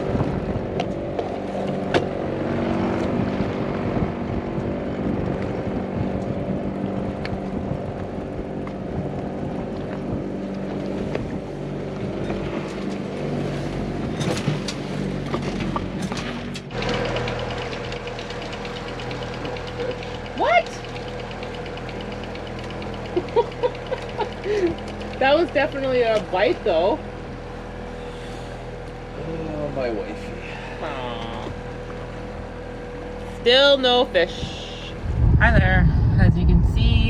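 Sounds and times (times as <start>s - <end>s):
boat motor running: 0.0s - 37.0s
steady hum: 34.2s - 37.0s.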